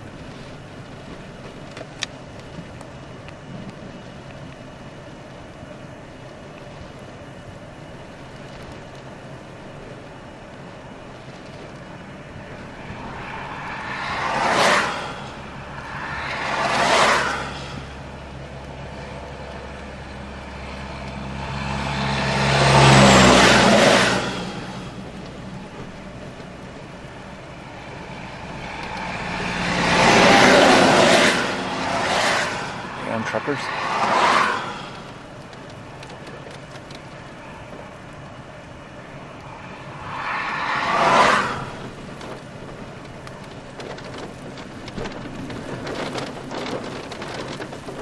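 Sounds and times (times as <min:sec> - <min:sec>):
low engine drone: 0:00.0 - 0:48.0
road traffic passing: 0:00.0 - 0:48.0.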